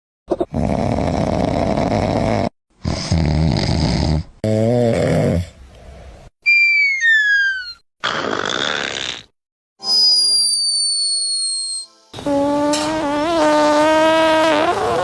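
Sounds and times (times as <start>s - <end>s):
person snoring loudly: 0.4s - 5.6s
falling whistle-like tones: 6.4s - 7.8s, 9.8s - 12.1s.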